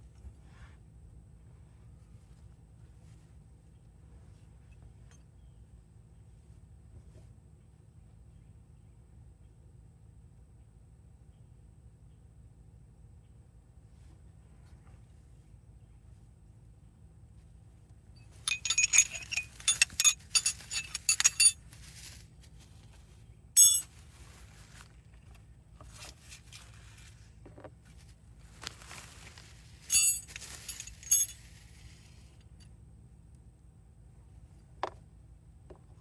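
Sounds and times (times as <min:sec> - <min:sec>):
metal hardware clinking and rattling: 0:18.2 - 0:21.7, 0:23.6 - 0:23.9, 0:29.8 - 0:31.6.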